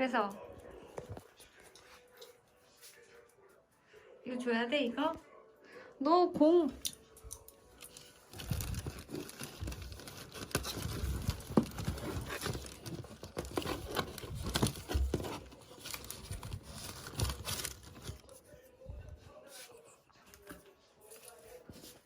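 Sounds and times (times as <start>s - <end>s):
crinkling and rustling: 7.2s - 18.6s, 19.5s - 22.0s.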